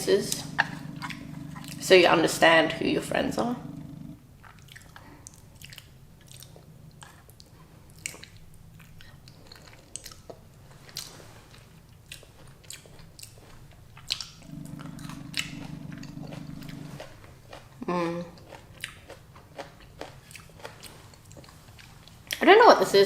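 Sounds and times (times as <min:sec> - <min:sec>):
low steady hum: 0:00.0 - 0:04.6, 0:14.2 - 0:18.1
person chewing food: 0:00.4 - 0:01.9, 0:03.6 - 0:22.4.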